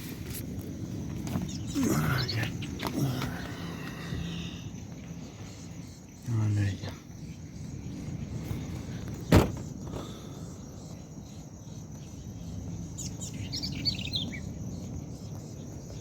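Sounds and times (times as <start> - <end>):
steady low rumble: 0.0 - 16.0
bird chirping: 1.2 - 16.0.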